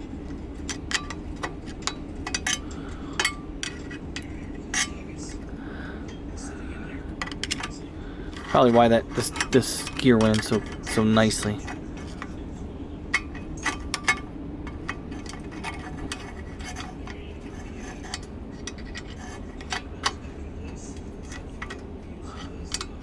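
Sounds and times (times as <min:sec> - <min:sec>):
metal parts and tools clinking: 0:00.0 - 0:23.0
steady low hum: 0:00.0 - 0:23.0.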